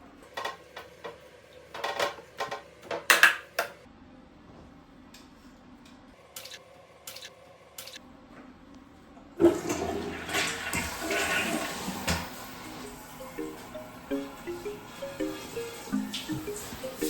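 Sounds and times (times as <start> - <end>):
toilet flushing: 9.4 - 17.0.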